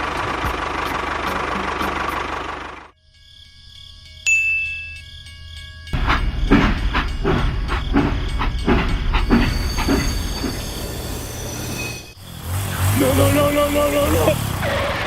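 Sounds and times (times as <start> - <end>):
rhythmic knocking clatter: 5.8 - 11.0.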